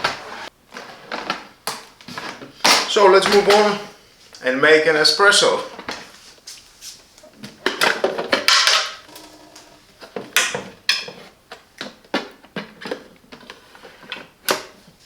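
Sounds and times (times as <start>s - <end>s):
portafilter knocking and scraping: 7.2s - 14.8s
espresso machine parts clattering: 7.4s - 11.3s.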